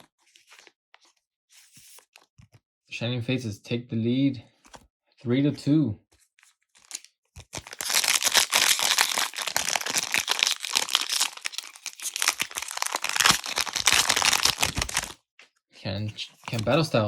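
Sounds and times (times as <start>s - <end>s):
foil wrapper crinkling and tearing: 6.8s - 15.2s.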